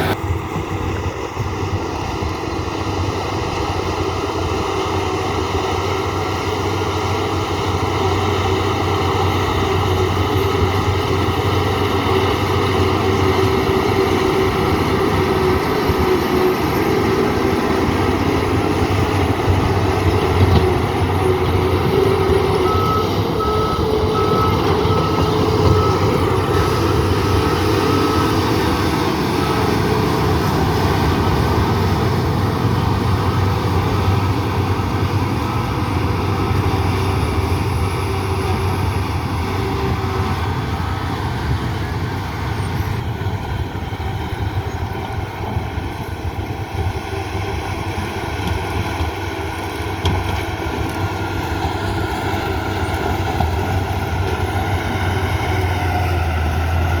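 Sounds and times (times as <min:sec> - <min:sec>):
heavy diesel engine running: 0:00.0 - 0:57.0
reversing alarm beeping: 0:08.4 - 0:34.3.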